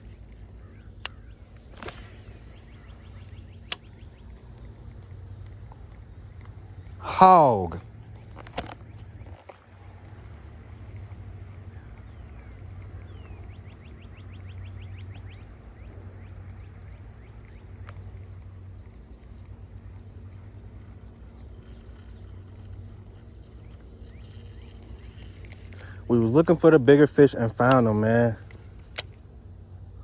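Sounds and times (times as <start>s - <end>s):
bird trilling chirps: 0.0s - 4.7s, 11.5s - 18.6s.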